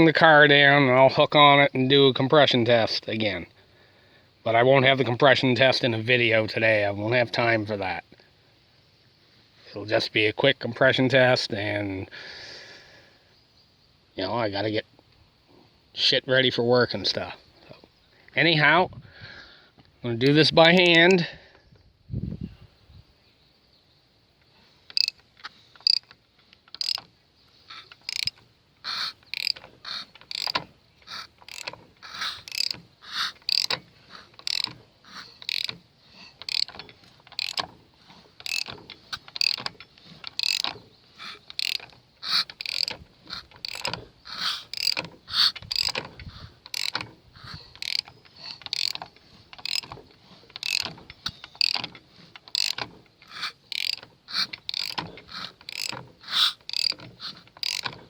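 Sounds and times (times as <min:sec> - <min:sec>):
cylinders making compression: 0:24.9 - 0:25.2, 0:25.8 - 0:27.1, 0:27.7 - 0:58.0
wrench clicks: 0:24.9 - 0:27.1, 0:27.7 - 0:35.8, 0:36.4 - 0:37.8, 0:38.4 - 0:47.1, 0:47.7 - 0:58.0.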